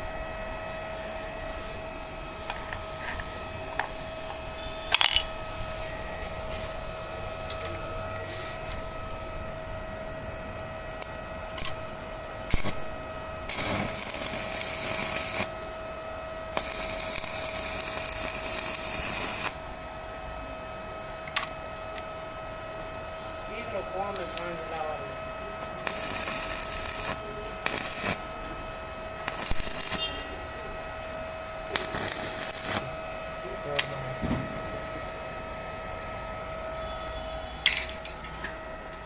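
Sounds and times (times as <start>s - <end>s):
welding machine whine: 0.0s - 39.0s
welding arc hiss: 8.2s - 9.5s, 11.0s - 11.8s, 12.4s - 15.6s, 16.5s - 19.7s, 25.7s - 28.3s, 29.2s - 30.3s, 31.6s - 33.0s.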